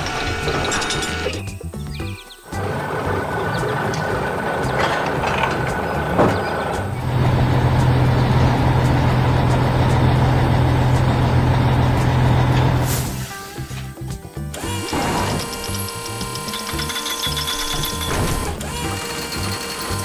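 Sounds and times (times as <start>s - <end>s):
heavy vehicle engine rumble: 2.6s - 13.9s.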